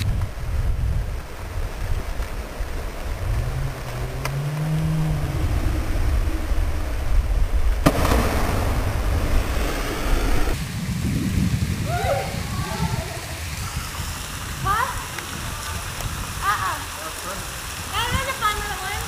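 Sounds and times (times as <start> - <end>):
falling water: 0.0 - 19.0
wind on microphone: 0.0 - 19.0
person splashing into pool: 7.8 - 10.6.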